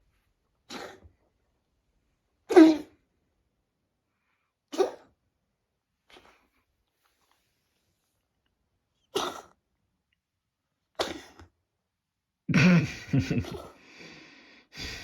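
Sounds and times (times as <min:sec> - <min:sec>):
cat coughing: 0:00.7 - 0:01.1, 0:02.5 - 0:02.9, 0:04.7 - 0:05.1, 0:09.1 - 0:09.6, 0:11.0 - 0:11.4, 0:12.5 - 0:13.8.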